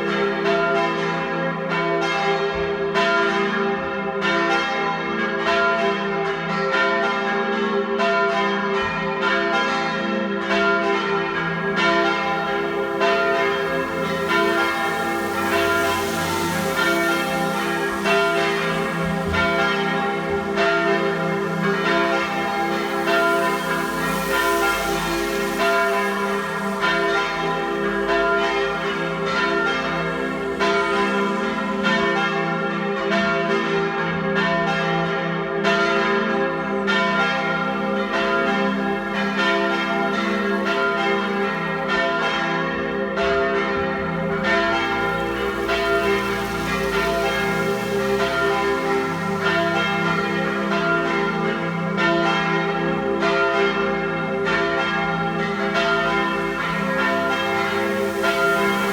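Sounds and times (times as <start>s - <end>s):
church bells ringing: 0.0s - 58.9s.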